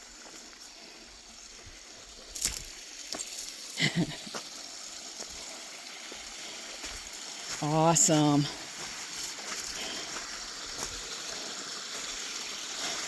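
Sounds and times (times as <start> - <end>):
waterfall rushing: 7.4 - 10.3.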